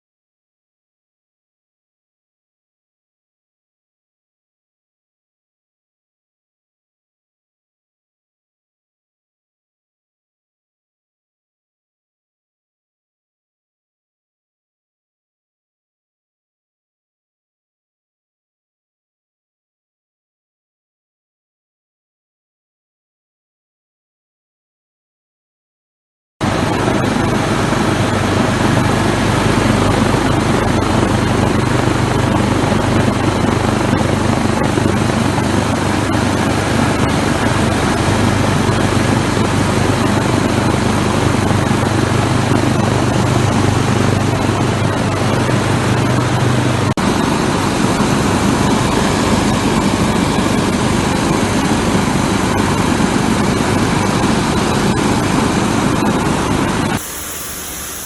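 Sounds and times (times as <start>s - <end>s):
filter rushing noise: 26.4s - 58.0s
low machine hum: 26.4s - 58.0s.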